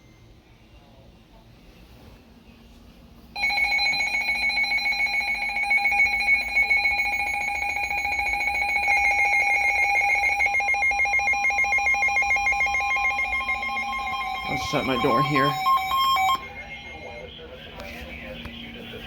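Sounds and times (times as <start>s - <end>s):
electronic alarm tone: 3.4s - 17.6s.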